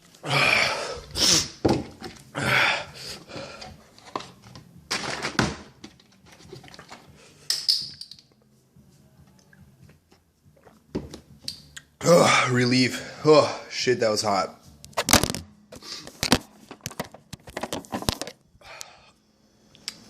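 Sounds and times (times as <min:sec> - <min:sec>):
man breathing hard and gasping: 0:00.2 - 0:01.6, 0:02.3 - 0:03.8, 0:18.6 - 0:19.2.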